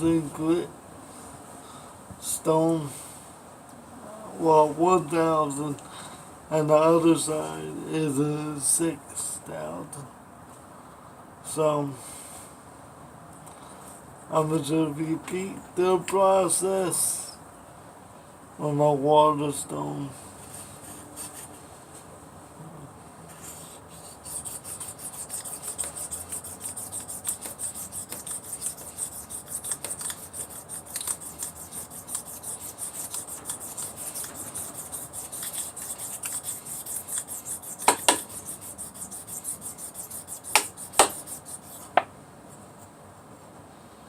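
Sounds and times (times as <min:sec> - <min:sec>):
blade rubbing on water stone: 0:23.5 - 0:42.0.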